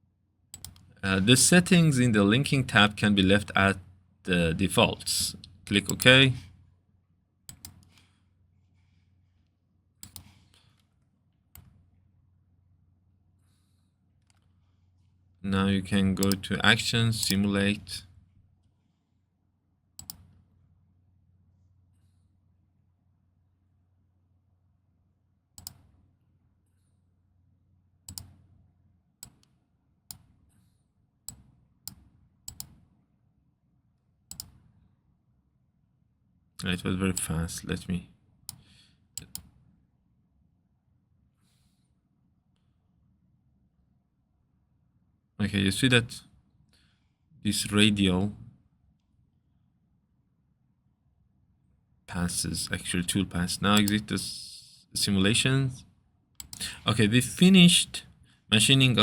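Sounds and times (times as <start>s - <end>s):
computer mouse clicks: 0.5s - 1.0s, 7.5s - 8.1s, 10.0s - 10.9s, 11.5s - 11.8s, 16.2s - 16.4s, 20.0s - 20.4s, 25.6s - 26.0s, 28.1s - 28.4s, 29.2s - 30.6s, 31.3s - 32.8s, 34.3s - 34.7s, 38.5s - 39.6s, 56.4s - 56.8s
faint low hum: 0.6s - 6.7s, 11.8s - 18.4s.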